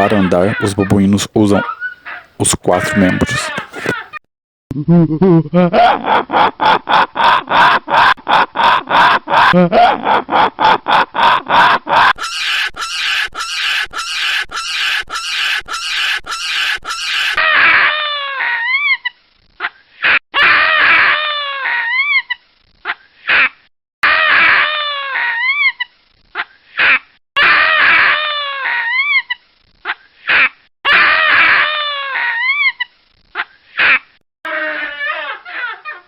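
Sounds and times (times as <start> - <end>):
baboons grunting: 0.0 - 4.2
baboons screaming: 0.0 - 4.2, 10.3 - 19.0, 20.0 - 22.3, 23.3 - 25.8, 26.8 - 29.4, 30.3 - 32.9, 33.8 - 36.0.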